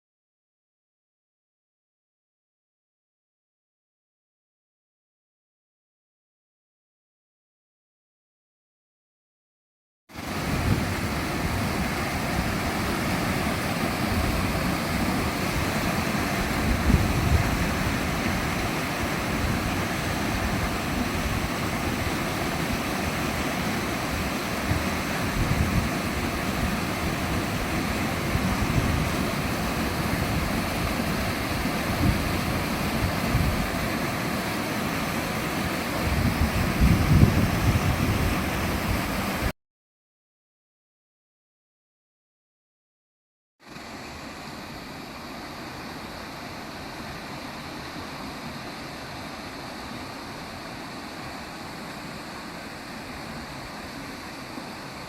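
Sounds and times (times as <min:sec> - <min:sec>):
waterfall rushing: 0:10.2 - 0:39.5
wind rumble on microphone: 0:10.3 - 0:13.5, 0:14.1 - 0:23.2, 0:24.0 - 0:34.0, 0:35.9 - 0:39.5.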